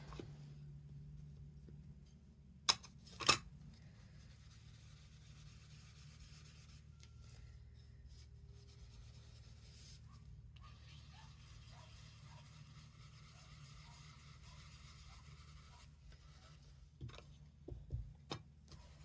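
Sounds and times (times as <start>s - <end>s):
brush rubbing on cardstock: 8.1s - 10.1s, 10.7s - 16.9s.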